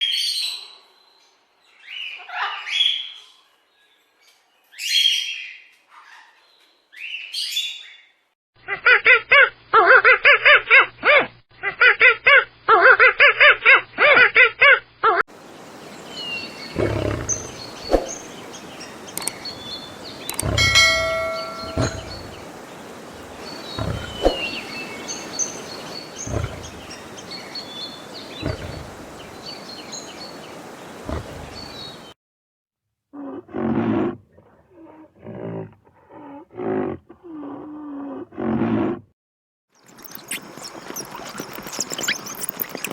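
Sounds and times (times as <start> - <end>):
birds chirping: 15.3 - 32.2
lion roaring: 16.7 - 18.4, 19.2 - 27.3, 28.3 - 29.4, 31.0 - 31.9, 33.2 - 39.1
loud rapid animal calls: 16.7 - 29.4, 30.9 - 32.0.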